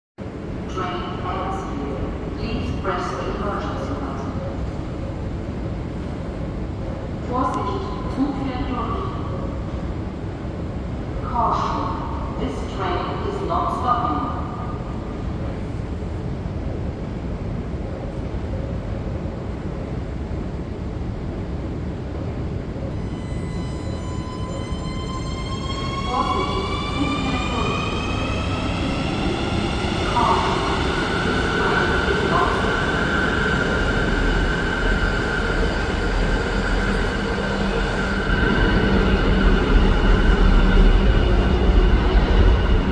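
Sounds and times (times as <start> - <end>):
train wheels rumbling on rails: 22.8 - 42.9
high whine: 22.9 - 36.9.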